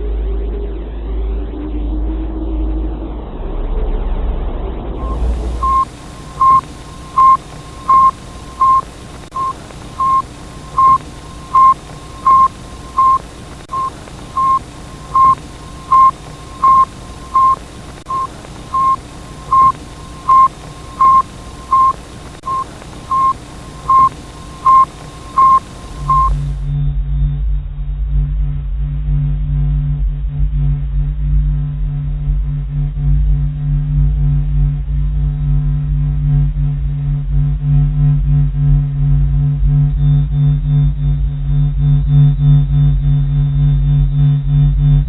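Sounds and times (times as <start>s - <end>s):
low rumble: 0.0s - 45.0s
short radio beeps: 5.0s - 26.6s
radio static hiss: 5.0s - 26.8s.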